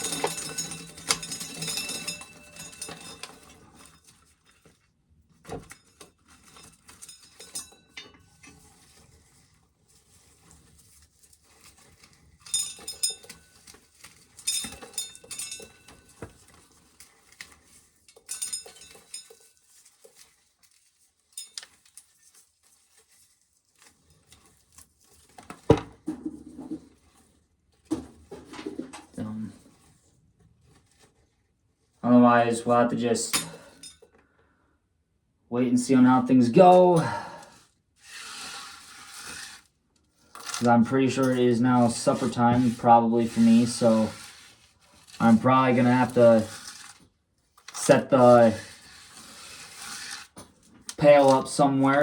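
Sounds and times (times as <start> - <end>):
corn kernels clicking and pattering: 0.0 - 4.7, 36.4 - 47.0, 47.6 - 52.0.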